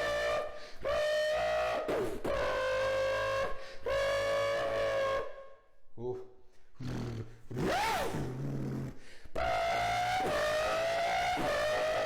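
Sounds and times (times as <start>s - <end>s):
beatboxer imitating a car: 6.8s - 12.0s.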